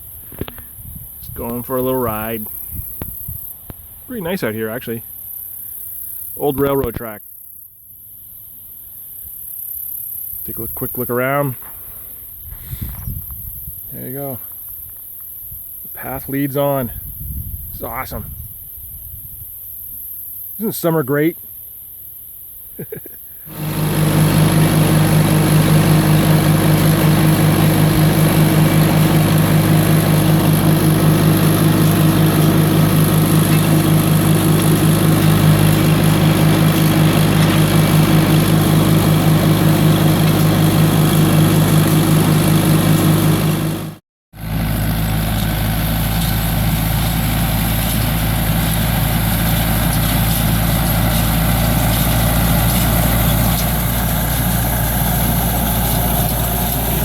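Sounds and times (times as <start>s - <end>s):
deeper engine sound: 23.5s - 57.0s
quad engine running: 23.5s - 57.0s.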